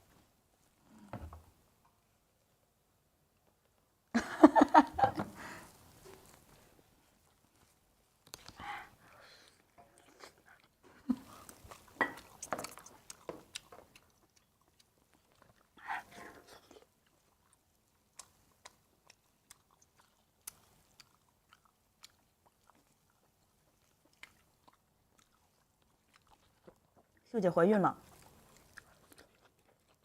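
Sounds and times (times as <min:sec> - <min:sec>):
chewing and biting food: 0:09.4 - 0:15.8, 0:16.5 - 0:27.2, 0:28.0 - 0:30.0.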